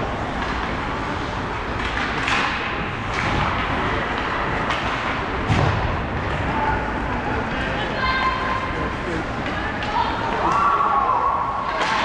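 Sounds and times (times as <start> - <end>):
crowd murmur: 6.2 - 12.0.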